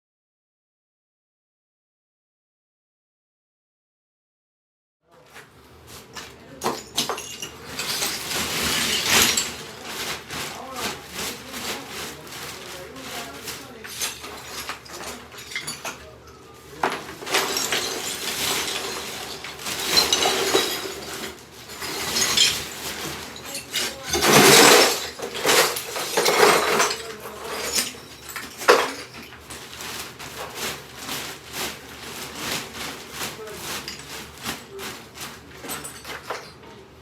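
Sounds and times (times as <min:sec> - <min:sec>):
demolition crashes and knocks: 0:06.5 - 0:16.0, 0:16.7 - 0:36.6.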